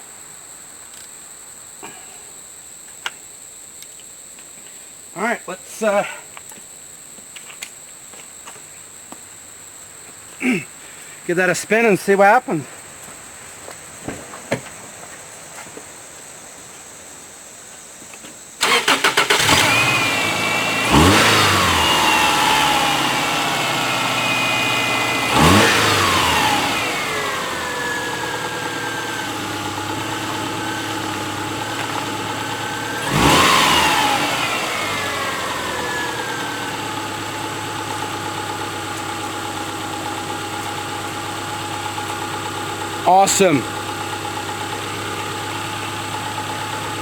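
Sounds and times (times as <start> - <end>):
car engine revving and idling: 18.6 - 47.0
starter cranking engine: 18.6 - 47.0.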